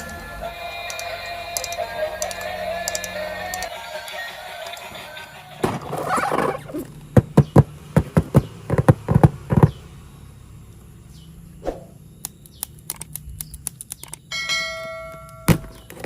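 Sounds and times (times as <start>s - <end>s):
light plastic ticks: 0.9s - 3.7s, 12.2s - 14.3s.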